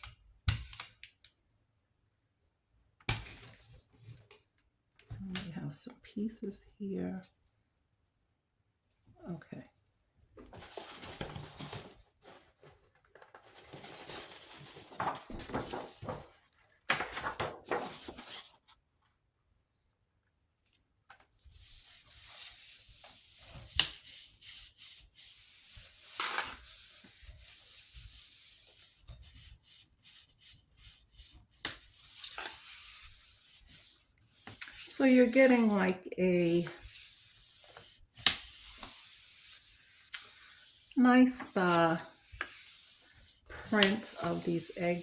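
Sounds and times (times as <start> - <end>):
paper rustling under rubbing hands: 10.5 - 18.8, 21.5 - 45.0.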